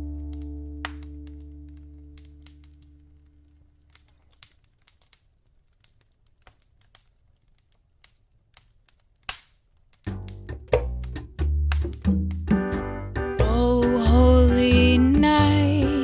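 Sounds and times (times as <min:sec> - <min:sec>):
low notes of a song: 0:00.0 - 0:03.4, 0:10.1 - 0:16.0
wood fire crackling and popping: 0:00.0 - 0:16.0.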